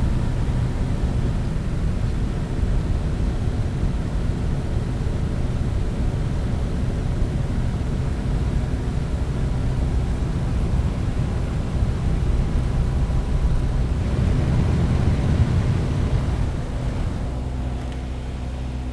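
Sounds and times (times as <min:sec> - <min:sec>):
propeller aircraft engine drone: 0:00.0 - 0:18.9
rushing wind: 0:09.4 - 0:17.8.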